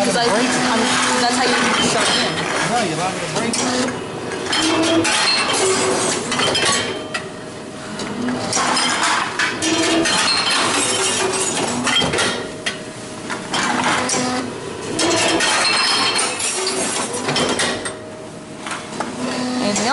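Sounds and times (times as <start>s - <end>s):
glass bottles clinking in a machine: 0.0s - 2.9s, 4.5s - 7.2s, 8.5s - 12.4s, 14.9s - 18.0s.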